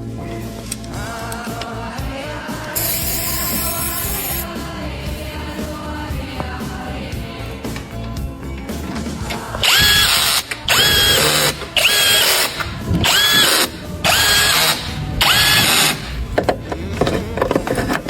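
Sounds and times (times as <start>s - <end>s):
power tool motor whine: 9.6s - 16.2s.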